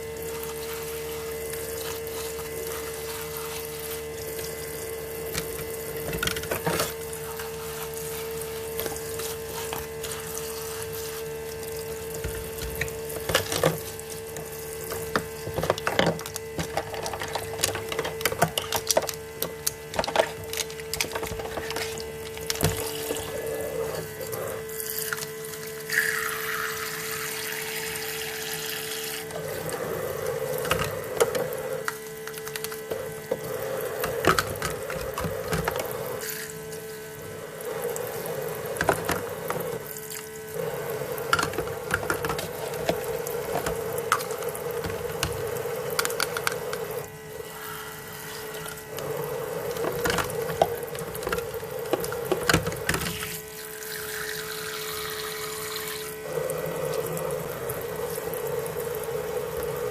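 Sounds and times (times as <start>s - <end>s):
small water pump humming: 0.0s - 59.9s.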